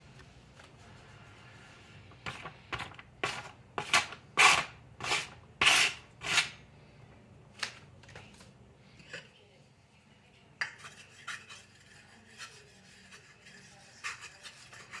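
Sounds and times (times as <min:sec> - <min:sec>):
knife scraping on sharpening stone: 0:03.2 - 0:06.6, 0:10.6 - 0:15.0.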